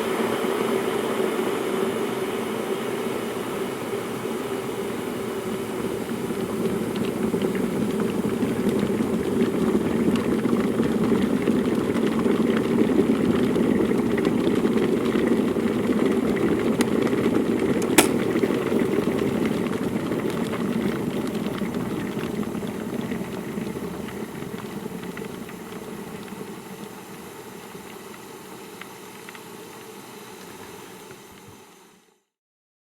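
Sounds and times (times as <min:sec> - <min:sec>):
water boiling in a kettle: 0:00.0 - 0:32.4
sharp click: 0:17.8 - 0:18.3.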